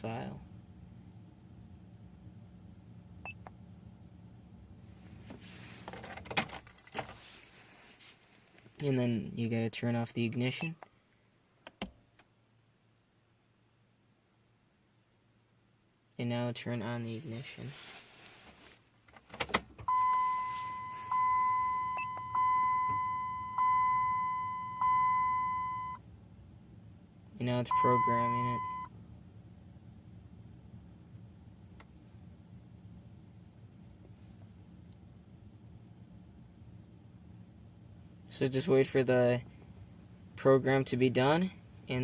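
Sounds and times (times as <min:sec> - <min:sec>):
faint cabin hum: 0:00.0 - 0:13.3, 0:16.2 - 0:42.0
keys jangling on a key ring: 0:05.9 - 0:07.2
dashboard warning chime: 0:19.9 - 0:26.0, 0:27.6 - 0:28.9.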